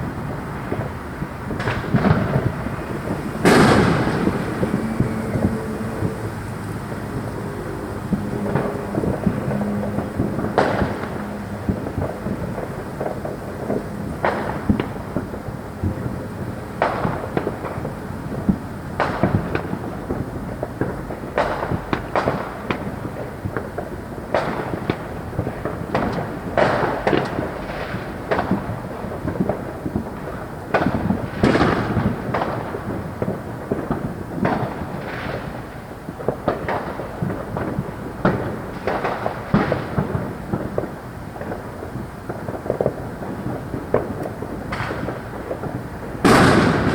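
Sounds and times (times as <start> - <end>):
fireworks bangs: 0.0 - 46.9
rumble of distant explosions: 0.0 - 46.9.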